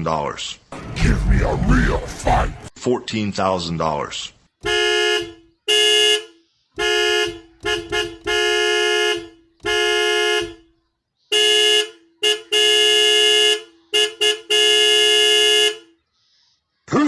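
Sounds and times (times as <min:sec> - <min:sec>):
horn honking: 0:04.6 - 0:16.0.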